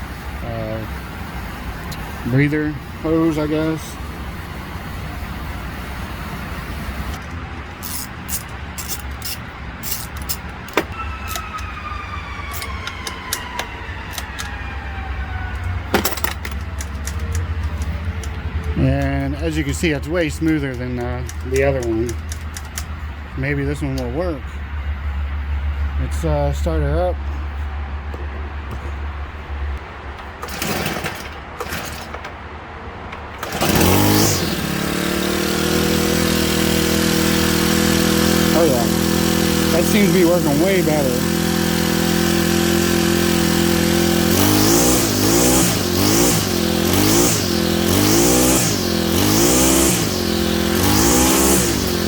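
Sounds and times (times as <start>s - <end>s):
trimmer engine idling: 5.3s - 11.0s, 16.6s - 24.2s, 30.4s - 32.0s, 33.4s - 52.0s
starter cord pulls: 7.1s - 11.7s, 12.5s - 14.6s, 15.5s - 23.0s, 30.2s - 32.4s, 33.1s - 52.0s
plastic parts and tools clicking: 7.2s - 11.7s, 12.5s - 14.6s, 15.5s - 19.2s, 20.2s - 23.0s.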